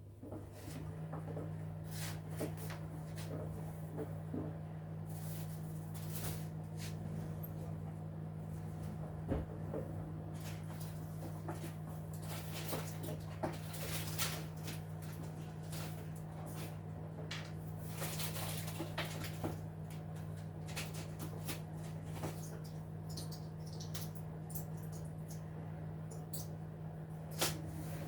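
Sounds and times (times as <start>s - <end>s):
washing machine motor hum: 0.0s - 28.0s.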